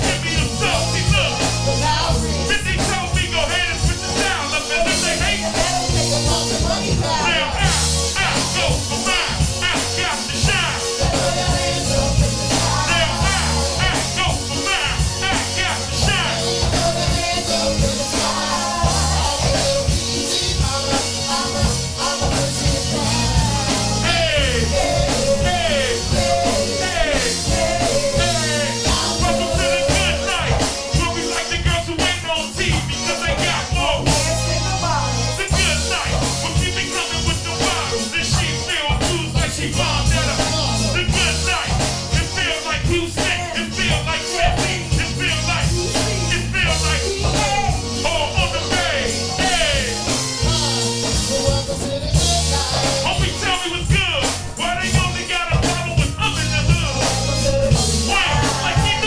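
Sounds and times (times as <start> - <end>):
rock music with singing: 0.0 - 59.0.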